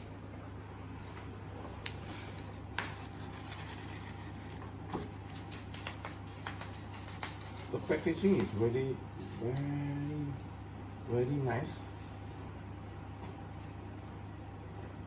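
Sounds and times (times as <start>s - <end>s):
steady low hum: 0.0s - 15.0s
plastic packaging rustling: 1.8s - 8.7s.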